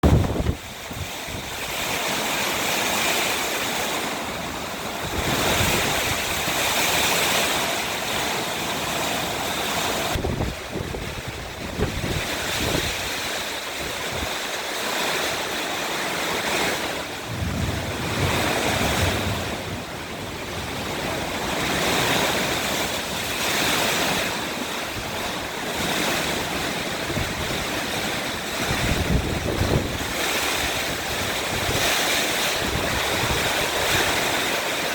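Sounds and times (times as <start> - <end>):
storm wind buffeting microphone: 0.0 - 34.9.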